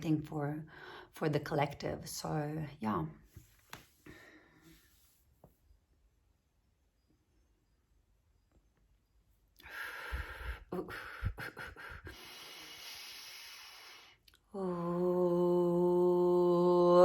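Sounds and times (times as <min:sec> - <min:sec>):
woman breathing deeply: 0:09.6 - 0:14.3
woman singing a held note: 0:14.5 - 0:17.0.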